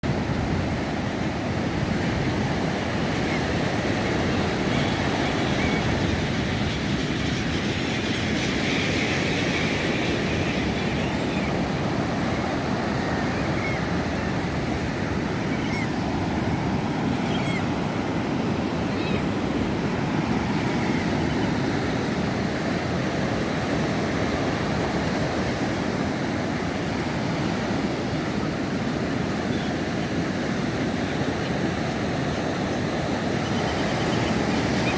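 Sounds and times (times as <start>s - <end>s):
ocean surf on a beach: 0.0s - 34.9s
faint seabird calls: 2.1s - 22.0s, 27.3s - 34.9s.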